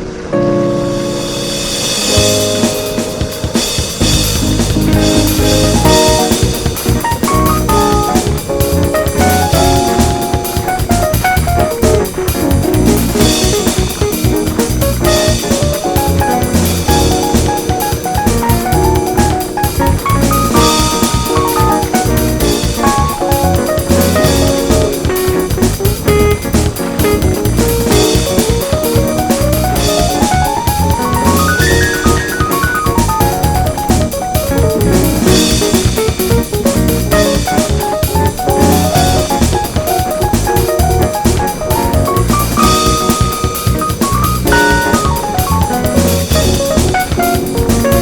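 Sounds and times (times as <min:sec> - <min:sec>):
guitar melody: 0:00.0 - 0:48.0
bass: 0:00.4 - 0:48.0
drum kit beat: 0:01.0 - 0:48.0.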